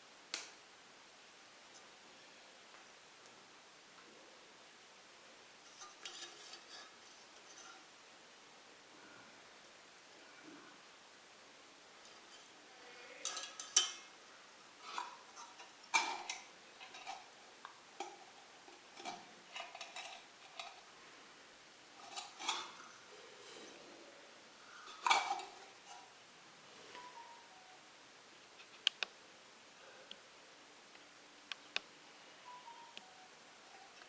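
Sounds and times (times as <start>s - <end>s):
metal clanks and clinks: 13.2s - 14.1s, 14.8s - 17.3s, 18.0s - 20.9s, 22.0s - 22.8s, 24.8s - 26.0s.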